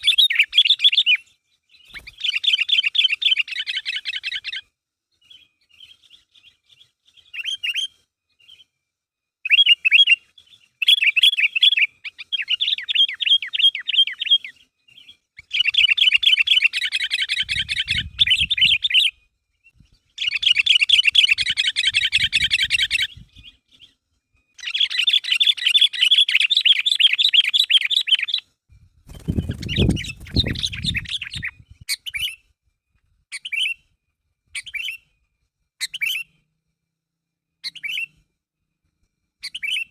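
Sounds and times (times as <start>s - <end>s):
bird singing chattering bursts: 29.1s - 32.2s.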